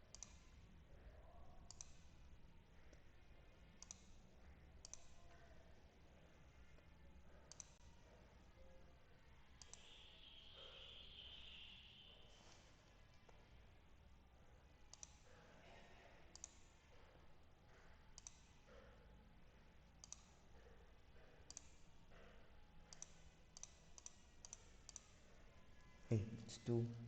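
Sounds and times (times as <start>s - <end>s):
computer mouse clicks: 0.1s - 0.4s, 1.6s - 2.1s, 3.8s - 4.2s, 4.8s - 5.4s, 7.5s - 7.9s, 9.6s - 11.5s, 14.9s - 15.3s, 16.3s - 16.7s, 18.1s - 18.6s, 20.0s - 20.5s, 21.4s - 21.8s, 22.8s - 25.2s.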